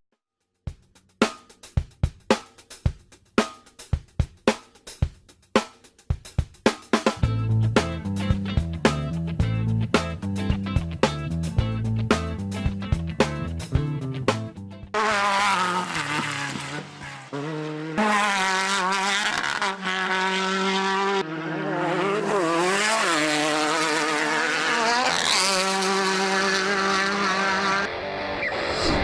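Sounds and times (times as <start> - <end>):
race vehicle engines revving: 15.0 - 28.8.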